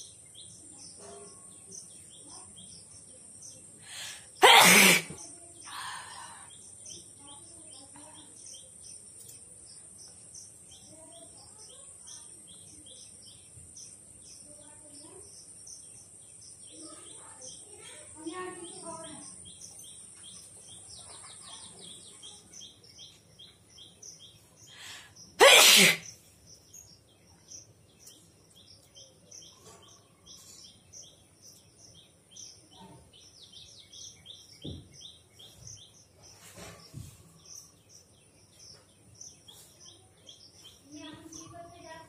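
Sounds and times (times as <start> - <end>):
high chirping of birds or insects: 0.0 - 42.0
person sneezing: 4.4 - 5.2, 25.4 - 26.1.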